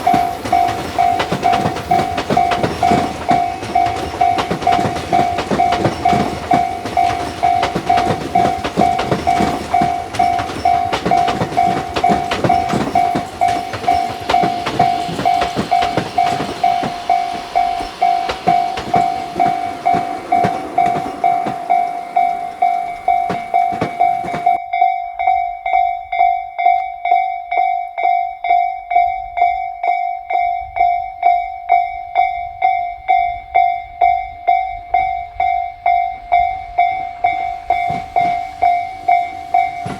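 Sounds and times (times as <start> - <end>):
train wheels clattering over rails: 0.0 - 24.6, 35.8 - 39.9.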